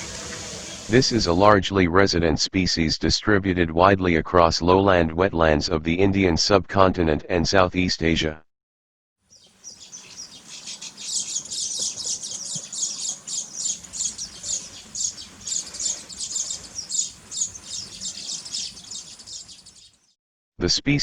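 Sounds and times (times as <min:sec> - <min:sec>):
ducks whistling calls: 0:00.0 - 0:01.4, 0:09.3 - 0:20.0.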